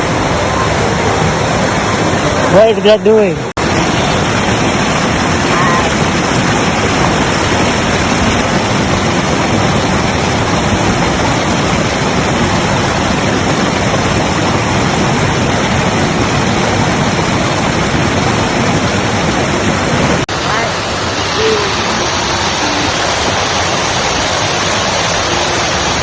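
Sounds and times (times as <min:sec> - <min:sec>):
waterfall roaring: 0:00.0 - 0:26.0.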